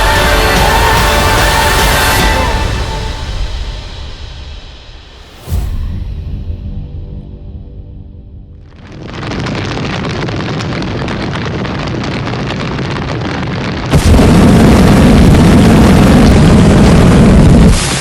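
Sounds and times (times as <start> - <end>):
loud rushing roar: 0.0 - 5.6.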